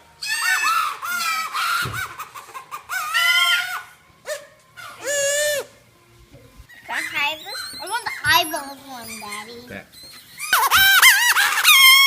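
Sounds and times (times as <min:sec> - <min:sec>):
paper whistle squawking: 0:04.3 - 0:05.7, 0:06.9 - 0:12.0.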